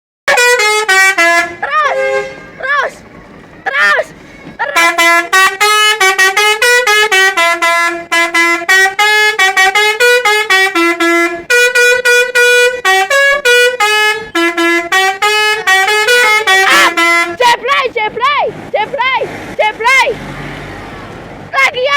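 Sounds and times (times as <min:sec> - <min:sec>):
bus musical horn playing a tune: 0:00.3 - 0:17.8.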